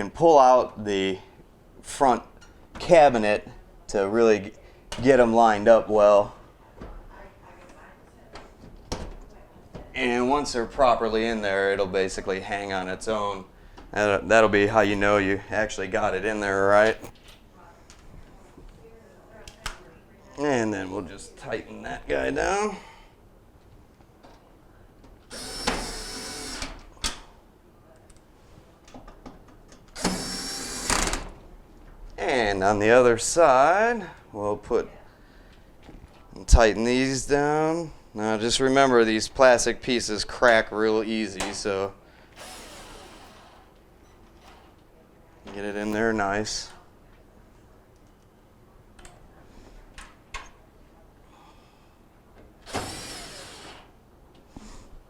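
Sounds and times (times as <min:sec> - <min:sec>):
cordless power driver running: 0:25.3 - 0:26.8, 0:30.0 - 0:31.2, 0:42.3 - 0:43.8, 0:52.6 - 0:53.9
screwdriver whir: 0:25.3 - 0:26.8, 0:29.9 - 0:31.2, 0:42.3 - 0:44.8, 0:52.6 - 0:54.0.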